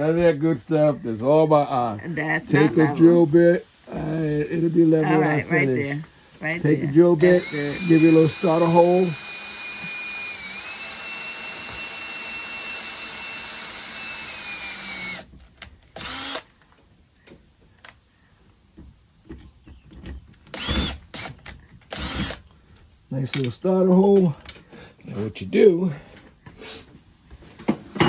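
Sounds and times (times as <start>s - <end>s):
power drill whining: 7.2s - 15.3s, 16.0s - 16.5s, 20.5s - 22.4s.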